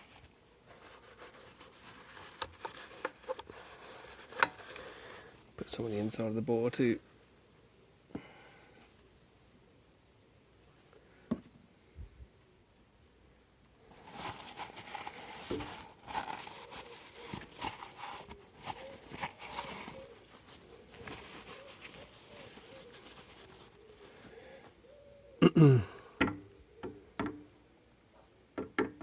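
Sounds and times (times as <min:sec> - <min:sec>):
rustling scraping and light knocks: 0:00.0 - 0:06.3, 0:13.9 - 0:24.8.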